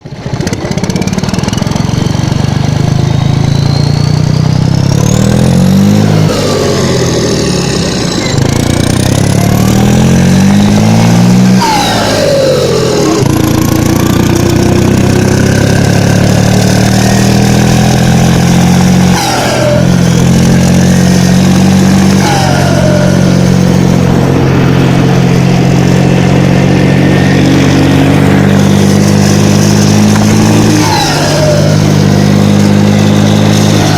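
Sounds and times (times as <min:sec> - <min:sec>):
tractor diesel engine revving: 0:00.0 - 0:33.9
turbo whistle: 0:03.2 - 0:04.6.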